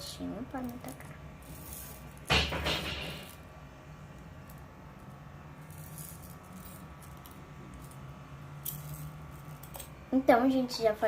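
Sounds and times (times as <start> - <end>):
plastic beads rattling into pot: 0.5 - 2.4, 4.4 - 9.8.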